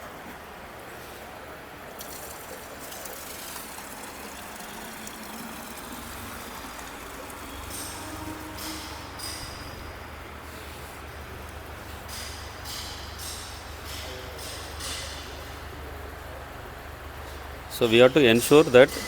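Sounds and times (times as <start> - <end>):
liquid pouring and splashing: 1.9 - 9.9.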